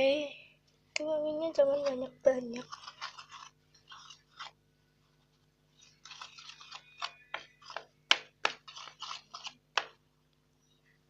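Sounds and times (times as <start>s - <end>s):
spoon scraping in container: 2.6s - 4.6s, 5.8s - 7.9s.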